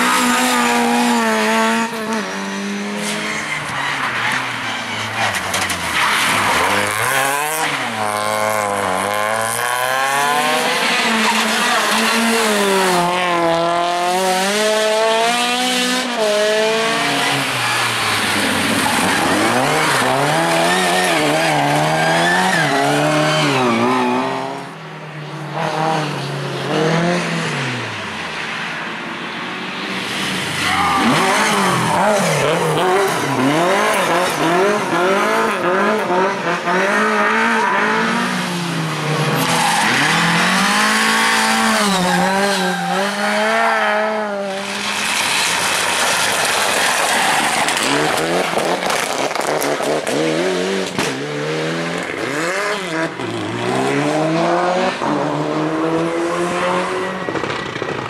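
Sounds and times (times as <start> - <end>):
rally car engines revving: 0.0 - 58.0
tyre squeal: 17.6 - 24.6.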